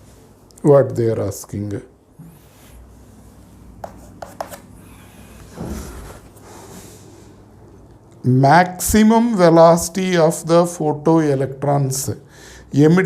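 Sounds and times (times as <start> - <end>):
low steady hum: 0.0 - 13.0
brush on surface: 2.2 - 5.6
rubbing and scraping on desk: 2.3 - 7.1.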